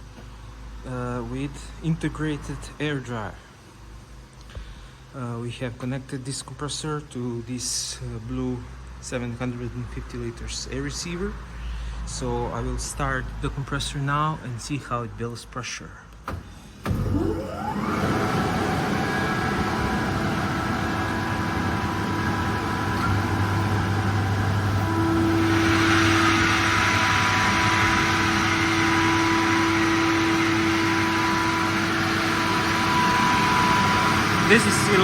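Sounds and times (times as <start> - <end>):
air compressor running: 16.7 - 35.0.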